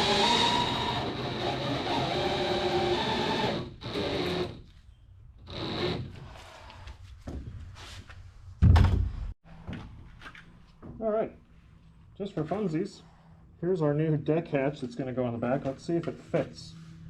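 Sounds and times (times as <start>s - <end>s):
handheld power tool running: 0.0s - 4.6s
loud thump: 8.6s - 9.3s.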